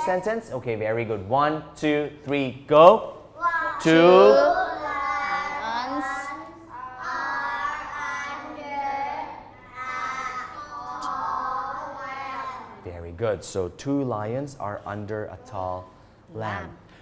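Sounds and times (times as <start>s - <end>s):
children reading aloud in chant: 3.1s - 13.0s.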